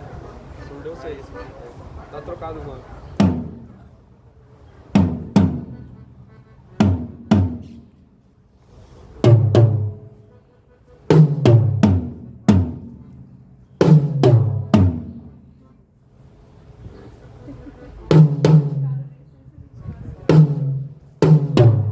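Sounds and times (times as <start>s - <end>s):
drum toms struck: 3.2s - 3.9s, 5.0s - 6.0s, 6.8s - 8.0s, 9.2s - 10.2s, 11.1s - 15.4s, 20.3s - 21.9s.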